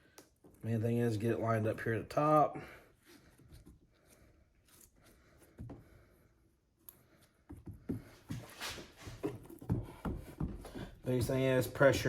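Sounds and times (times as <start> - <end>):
soft knocks and rustles: 7.4 - 12.0.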